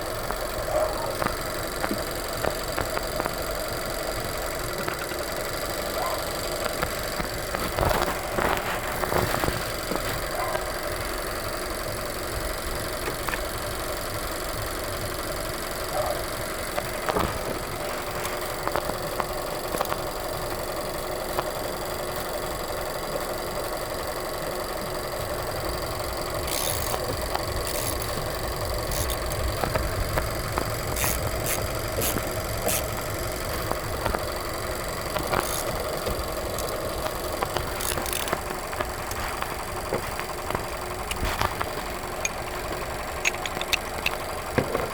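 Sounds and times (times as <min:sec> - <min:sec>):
car engine idling: 0:00.0 - 0:44.9
sharp clicks: 0:00.1 - 0:10.7, 0:25.2 - 0:44.9.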